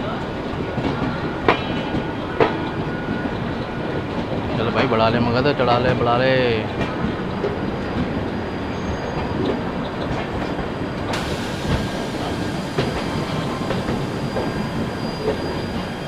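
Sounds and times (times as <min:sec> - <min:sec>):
train rumbling on track: 0:00.0 - 0:16.0
hiss: 0:11.1 - 0:16.0.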